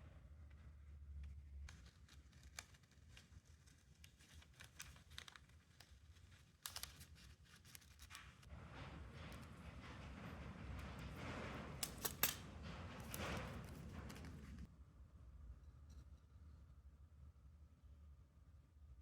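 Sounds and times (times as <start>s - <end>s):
small parts clicking and rustling: 1.2s - 8.5s, 9.2s - 14.7s.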